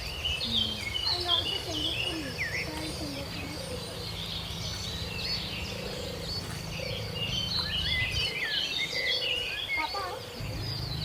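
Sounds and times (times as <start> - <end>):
small birds chirping: 0.0 - 11.0
steady low rumble: 10.4 - 11.0.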